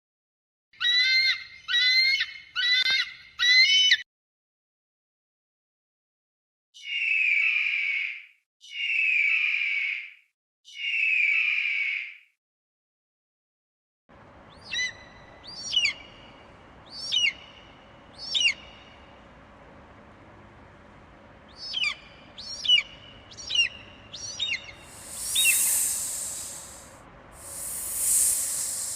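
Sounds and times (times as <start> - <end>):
eagle calling: 14.5 - 19.1, 21.4 - 28.9
hissing rush of noise: 23.1 - 28.9.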